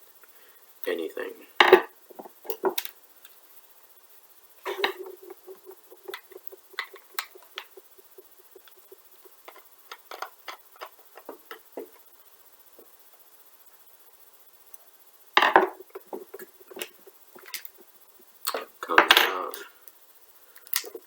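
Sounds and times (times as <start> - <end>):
parts clattering: 1.6 - 3.0, 4.6 - 12.1, 15.4 - 17.8.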